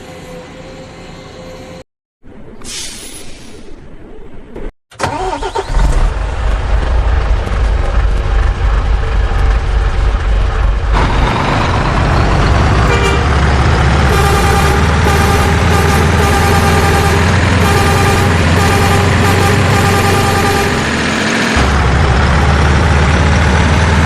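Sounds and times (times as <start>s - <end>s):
vehicle engine humming: 0.0s - 24.0s
horn-like tones: 12.8s - 13.3s, 14.1s - 21.0s.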